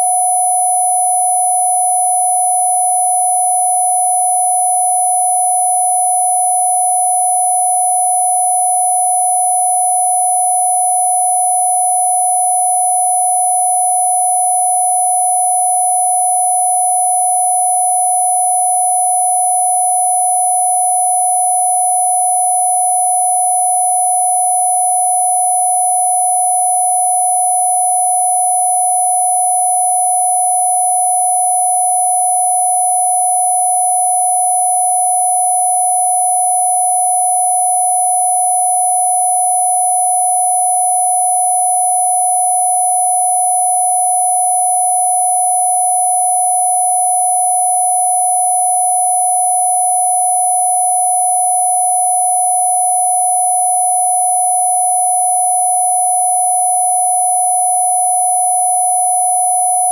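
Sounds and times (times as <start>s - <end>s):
steady sine tone: 0.0s - 59.9s.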